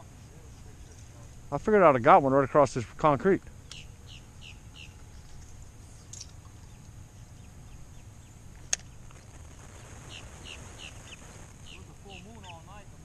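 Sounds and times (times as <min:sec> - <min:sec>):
bird calling: 0:03.5 - 0:09.0, 0:09.7 - 0:12.9
low rumble: 0:07.6 - 0:12.1.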